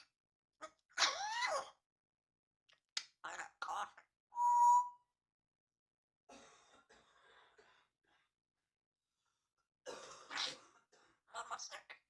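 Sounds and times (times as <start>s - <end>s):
parrot imitating a cough: 10.1s - 10.6s.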